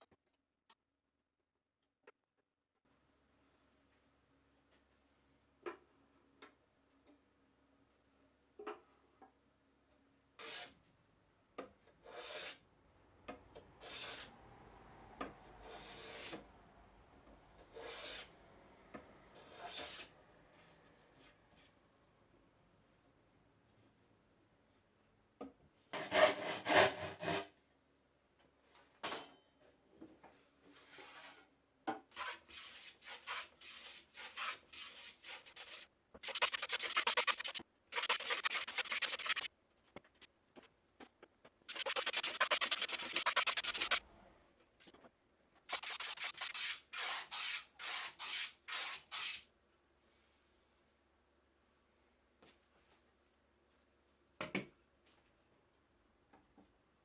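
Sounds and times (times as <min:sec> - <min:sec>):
hand tool scraping wood: 0:13.8 - 0:14.3, 0:32.1 - 0:39.5, 0:41.7 - 0:44.0, 0:45.7 - 0:49.4.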